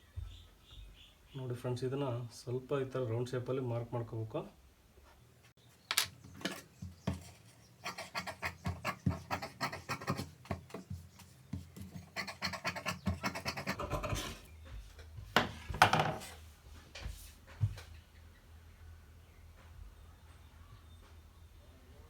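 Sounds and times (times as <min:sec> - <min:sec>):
marking tool scratching cloth: 0:06.3 - 0:14.4.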